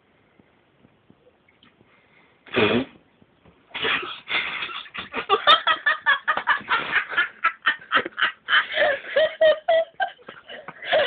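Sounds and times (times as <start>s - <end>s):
breathless laughter: 6.6s - 11.0s.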